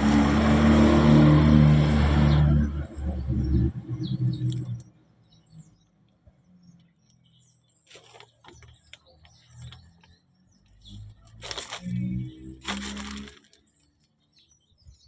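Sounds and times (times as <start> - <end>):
faint bird chirps: 2.6 - 11.4.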